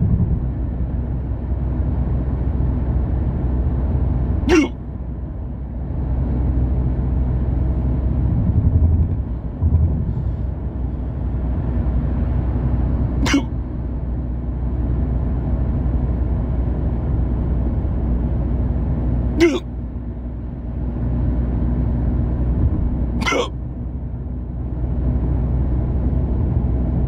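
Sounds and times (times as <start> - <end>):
car cabin rumble: 0.0 - 27.0
person hiccuping: 4.5 - 4.8, 13.2 - 13.6, 19.4 - 19.7, 23.2 - 23.6.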